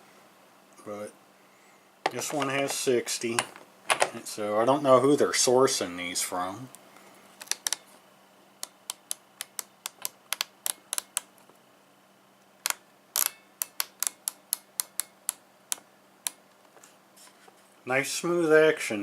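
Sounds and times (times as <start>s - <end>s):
ratchet pawl clicking: 13.2s - 15.4s.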